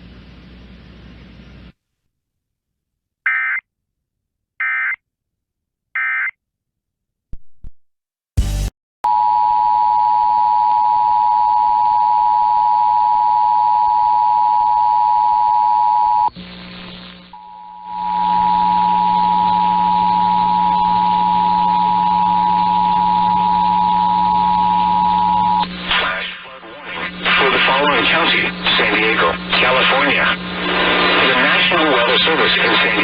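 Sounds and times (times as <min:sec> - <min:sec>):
low hum: 0:16.3 - 0:25.9.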